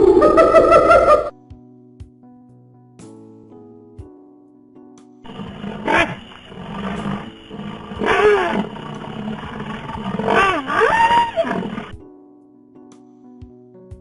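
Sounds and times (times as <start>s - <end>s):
wild animal crying: 0.0s - 1.3s, 5.3s - 12.0s.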